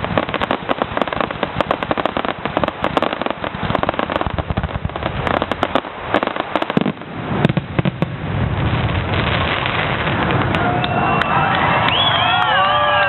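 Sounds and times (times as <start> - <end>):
fireworks crackling and banging: 0.0 - 13.0
crowd noise: 9.7 - 13.0.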